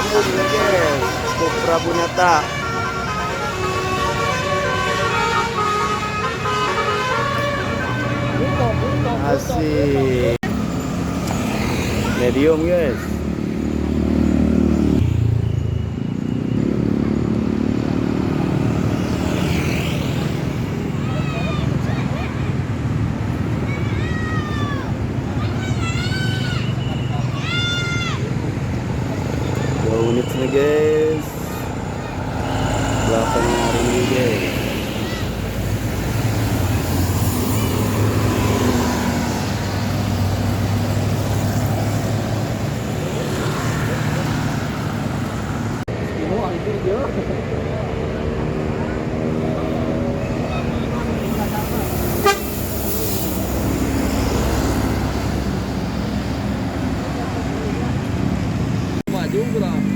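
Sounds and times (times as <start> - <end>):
bus diesel engine drone: 0.0 - 23.8, 28.2 - 59.9
road traffic noise: 0.0 - 59.9
bus diesel engine running: 49.6 - 59.0.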